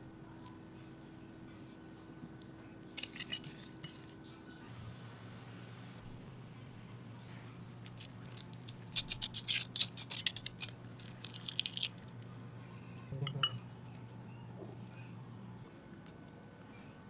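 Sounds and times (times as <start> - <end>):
utensils clinking on dishes: 2.9 - 4.2, 7.8 - 11.9, 13.2 - 13.7.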